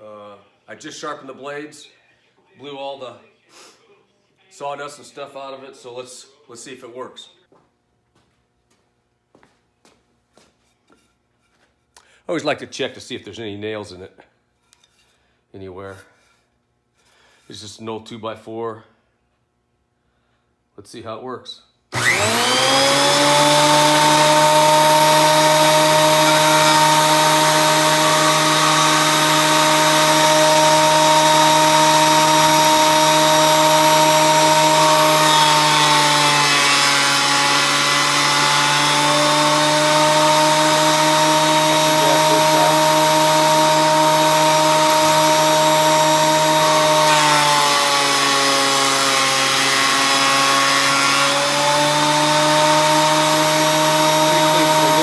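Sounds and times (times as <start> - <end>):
planer cutting wood under load: 21.9 - 55.0
thickness planer motor whine: 21.9 - 55.0.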